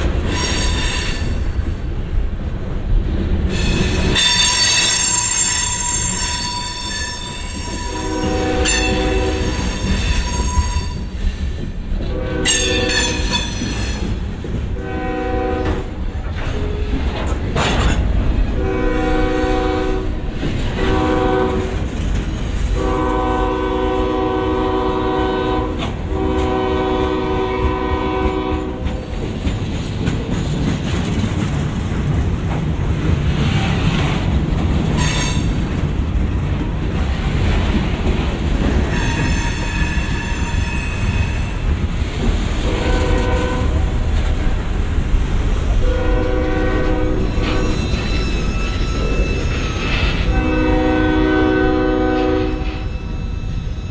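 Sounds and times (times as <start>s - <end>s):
locomotive air horn blasts: 4.2s - 11.0s, 12.0s - 14.1s, 14.8s - 16.0s, 18.5s - 20.2s, 20.8s - 21.8s, 22.8s - 28.9s, 42.6s - 43.9s, 45.8s - 48.0s, 50.2s - 53.1s.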